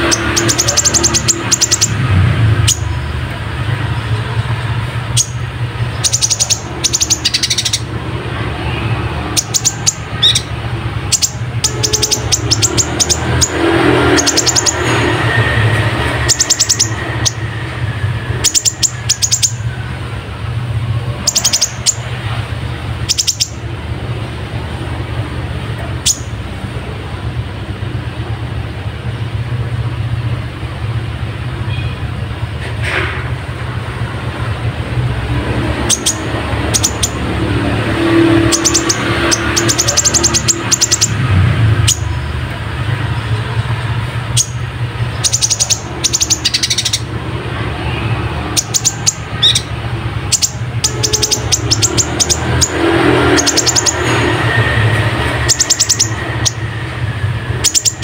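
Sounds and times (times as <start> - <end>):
sunbird singing high chirps: 0.0 - 20.4, 21.0 - 26.5, 35.5 - 58.0.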